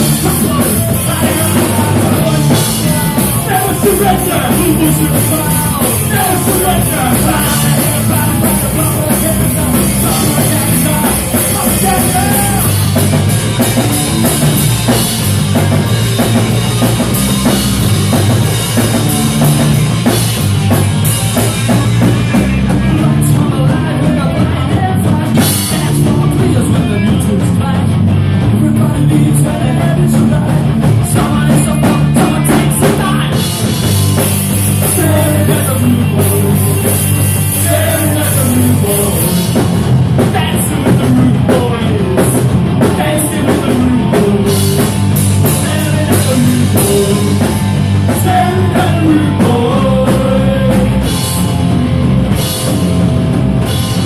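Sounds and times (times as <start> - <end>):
person singing: 0.0 - 13.0, 40.3 - 51.3
bass guitar: 0.0 - 54.0
distorted electric guitar: 0.0 - 54.0
drum kit: 0.0 - 54.0
punk rock band playing: 0.0 - 54.0.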